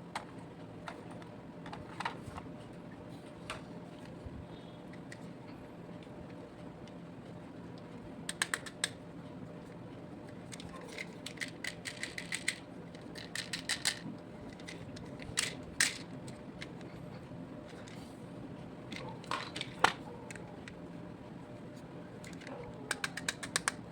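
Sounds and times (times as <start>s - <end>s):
toy vehicles clicking and tapping: 8.3s - 9.0s, 10.5s - 16.0s, 22.2s - 23.8s.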